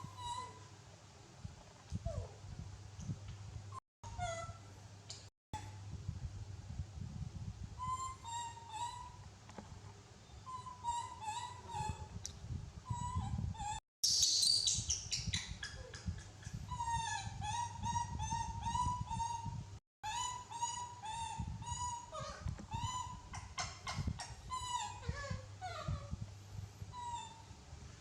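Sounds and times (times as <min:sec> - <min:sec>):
animal high-pitched cries: 0:10.5 - 0:12.0, 0:20.1 - 0:26.1, 0:27.0 - 0:27.5.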